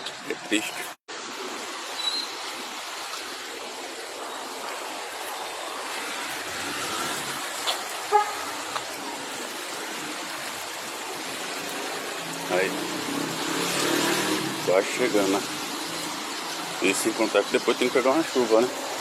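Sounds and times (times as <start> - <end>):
rain hiss: 0.0 - 19.0
traffic on wet street: 0.0 - 19.0
car horn toot: 8.1 - 8.7.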